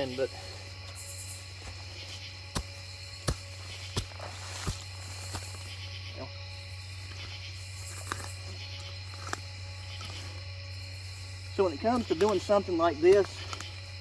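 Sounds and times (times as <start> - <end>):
shovel chopping into ground: 2.5 - 5.6.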